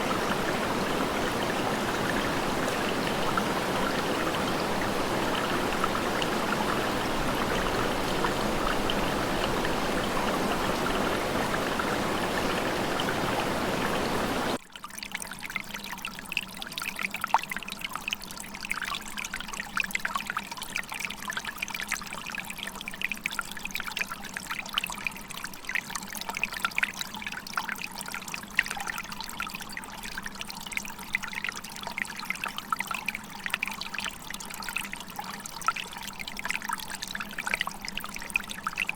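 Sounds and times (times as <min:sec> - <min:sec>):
waterfall rushing: 0:00.0 - 0:14.6
water trickling and splashing: 0:00.0 - 0:18.7.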